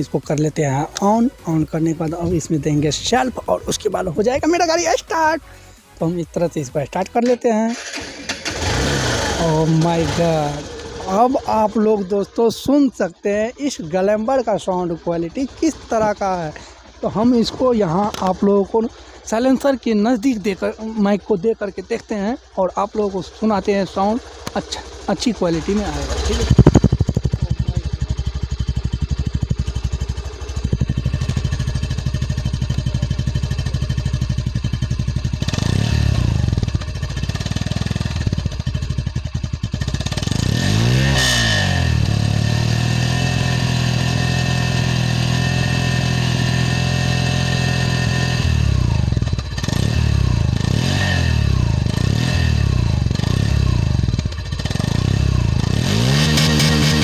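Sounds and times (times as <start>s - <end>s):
motorcycle engine idling and revving: 0.0s - 57.0s.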